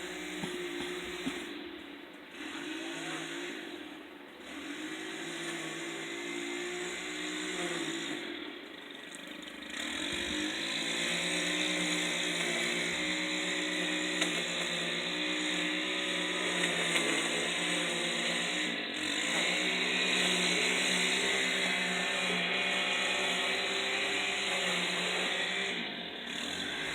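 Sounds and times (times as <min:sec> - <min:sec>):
small gas engine running: 0:00.0 - 0:26.9.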